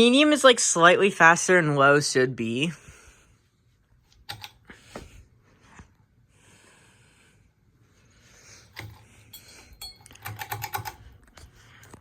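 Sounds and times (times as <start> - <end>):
ceiling fan clicking: 4.1 - 5.2, 8.7 - 12.0.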